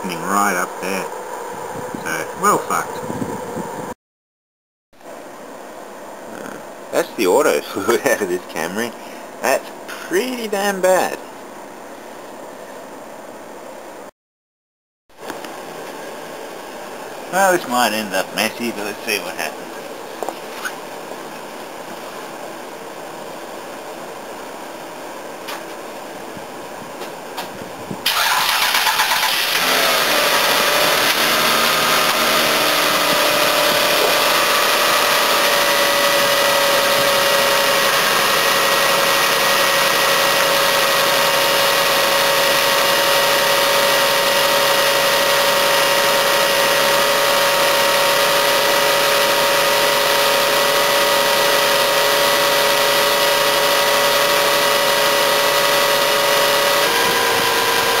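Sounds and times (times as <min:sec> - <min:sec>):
car engine starting and idling: 0:28.1 - 0:52.8.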